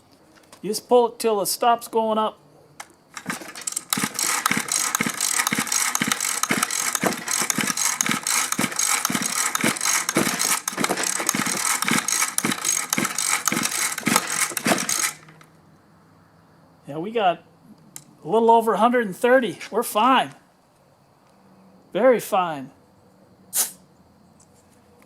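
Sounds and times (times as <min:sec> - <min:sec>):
small engine cranked by pull-starter: 0:03.1 - 0:15.5.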